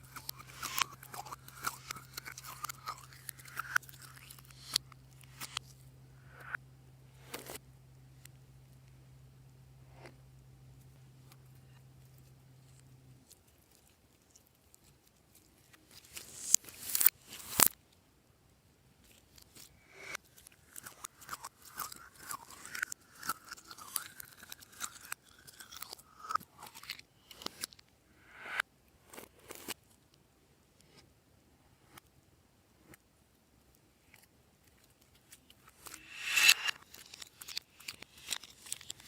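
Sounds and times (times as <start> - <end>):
slime squelching: 0.0 - 5.7.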